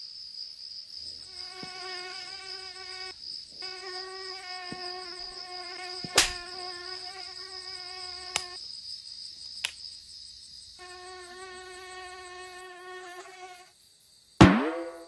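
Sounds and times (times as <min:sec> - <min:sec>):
insect buzzing trill: 0:01.4 - 0:08.6, 0:10.5 - 0:13.7
sharp click: 0:06.2 - 0:06.4.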